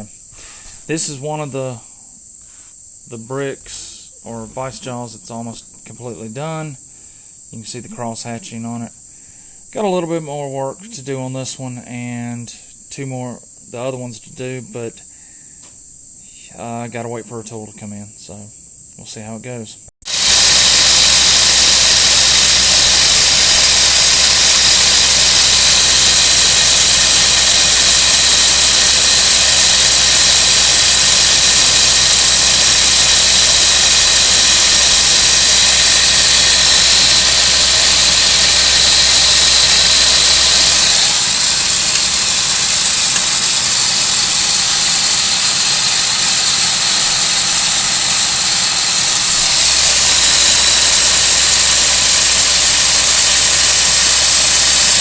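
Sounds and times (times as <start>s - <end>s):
machine hissing: 0.0s - 1.3s, 20.0s - 55.0s
machine low hum: 20.1s - 55.0s.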